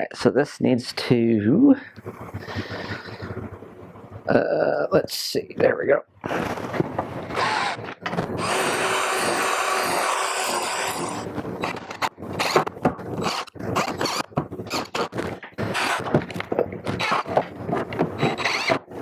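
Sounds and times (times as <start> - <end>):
knocks and scraping on wood: 6.2 - 19.0
handheld power tool running: 7.3 - 12.6, 13.2 - 14.9, 15.6 - 16.1, 17.0 - 17.4, 18.2 - 18.8.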